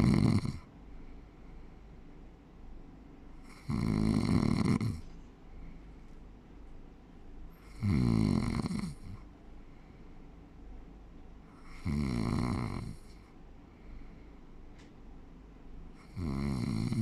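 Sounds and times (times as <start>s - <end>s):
person snoring: 0.0s - 0.6s, 3.4s - 5.0s, 7.6s - 9.2s, 11.6s - 13.2s, 16.0s - 17.0s.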